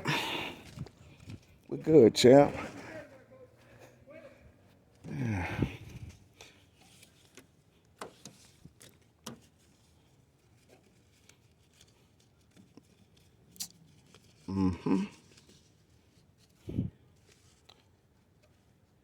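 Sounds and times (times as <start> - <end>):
man's voice: 1.7 - 4.5.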